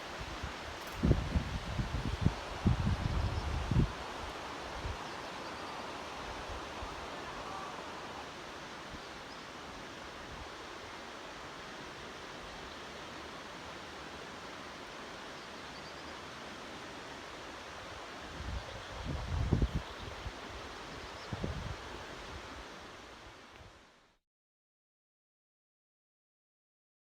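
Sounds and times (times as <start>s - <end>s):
rushing natural hiss: 0.0s - 24.2s
wind rumble on microphone: 0.2s - 4.1s, 18.3s - 20.4s, 21.2s - 22.5s.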